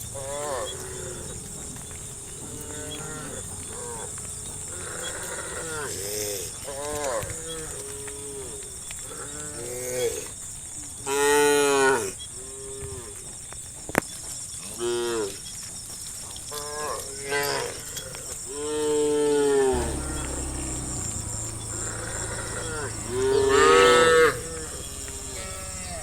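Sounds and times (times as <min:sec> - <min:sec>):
cattle mooing: 0:00.2 - 0:07.7, 0:19.7 - 0:26.0.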